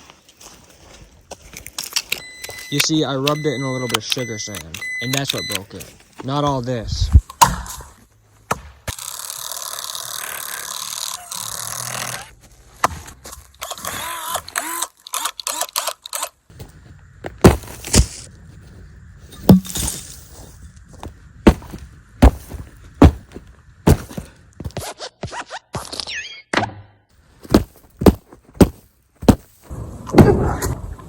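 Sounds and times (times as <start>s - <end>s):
hard objects knocking and thudding: 19.4s - 20.0s, 21.5s - 24.2s.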